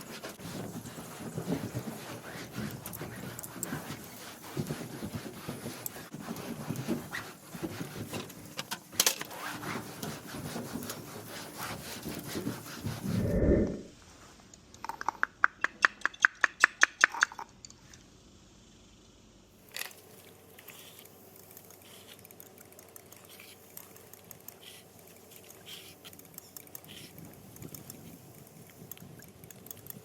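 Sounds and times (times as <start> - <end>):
rapid sharp ticks: 21.0 - 30.0.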